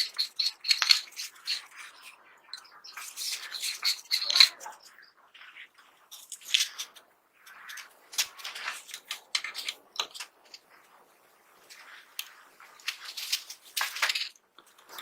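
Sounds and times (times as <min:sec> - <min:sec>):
metal parts scraping: 0:00.0 - 0:04.7, 0:06.1 - 0:10.6, 0:12.9 - 0:14.4.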